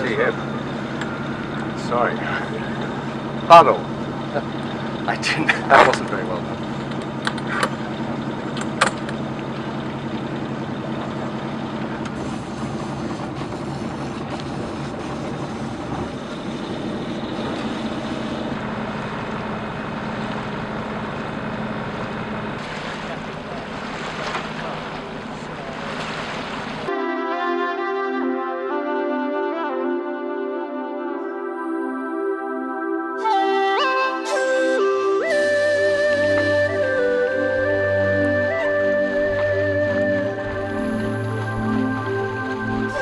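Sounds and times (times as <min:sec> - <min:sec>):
boat engine humming: 0:00.0 - 0:27.1, 0:31.3 - 0:43.0
music: 0:26.9 - 0:43.0.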